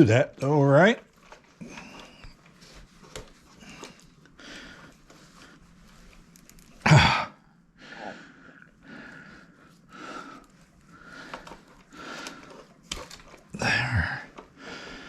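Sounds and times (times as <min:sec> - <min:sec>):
breathy rasps: 0:13.5 - 0:15.0.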